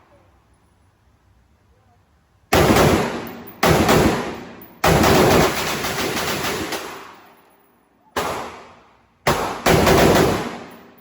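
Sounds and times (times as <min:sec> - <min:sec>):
pistol shots: 0:02.5 - 0:07.2, 0:08.2 - 0:11.0.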